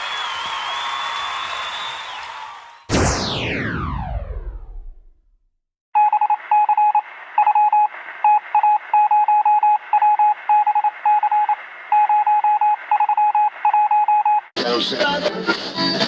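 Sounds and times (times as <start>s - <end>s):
falling tone sweep: 2.9s - 5.2s
touch-tone dialing beeps: 6.0s - 14.5s.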